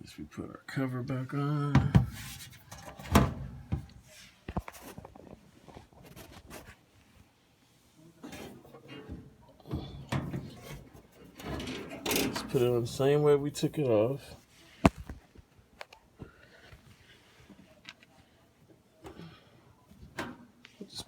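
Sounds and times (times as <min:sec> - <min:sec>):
metal cover knocking and clattering: 0:01.8 - 0:03.9, 0:08.4 - 0:12.7.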